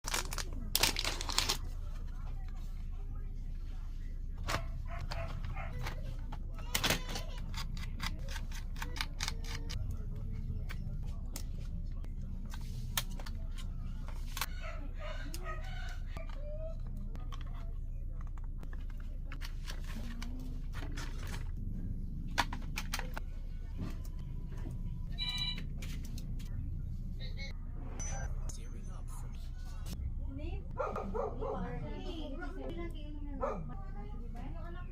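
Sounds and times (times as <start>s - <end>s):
steady low hum: 9.6s - 34.9s.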